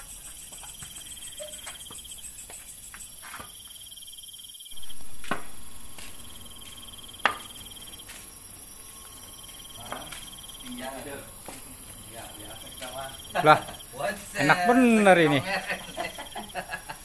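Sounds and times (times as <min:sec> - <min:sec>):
crickets chirping: 0:00.0 - 0:17.0
rush of noise: 0:04.8 - 0:09.9.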